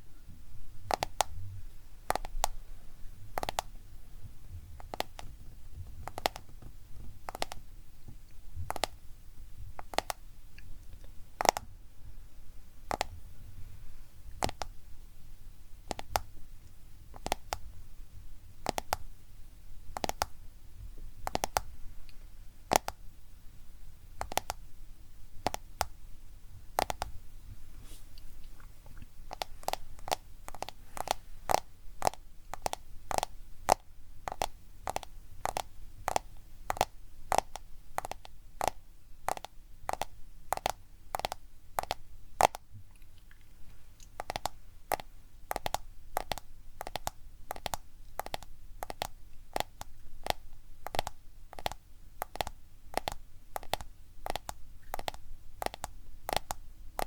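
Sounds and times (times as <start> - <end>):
tapping on a smartphone: 0.8 - 1.3, 2.1 - 2.6, 3.3 - 3.7, 6.0 - 6.6, 7.3 - 7.6, 9.8 - 10.2, 11.4 - 11.7, 12.9 - 13.2, 15.9 - 16.3, 17.1 - 17.7, 18.6 - 19.1, 20.0 - 20.3, 21.2 - 21.7, 22.7 - 23.0, 24.2 - 24.6, 25.4 - 26.0, 26.8 - 27.2, 29.3 - 42.6, 44.2 - 57.0.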